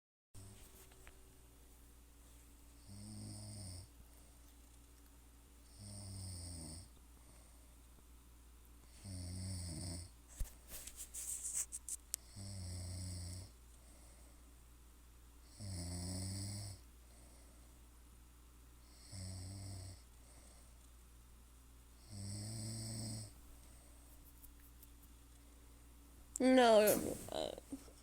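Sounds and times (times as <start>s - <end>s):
person snoring: 2.8s - 3.9s, 5.7s - 6.9s, 8.9s - 10.1s, 12.3s - 13.5s, 15.5s - 16.8s, 18.9s - 20.5s, 22.0s - 23.3s.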